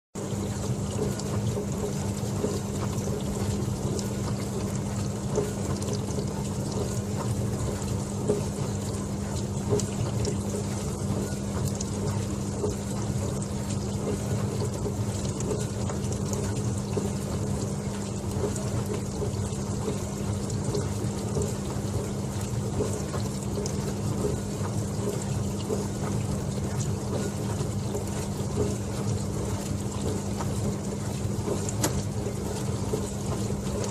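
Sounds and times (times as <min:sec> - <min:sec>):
dishwasher hum: 0:00.2 - 0:33.9
dishwasher water spraying: 0:23.1 - 0:33.9.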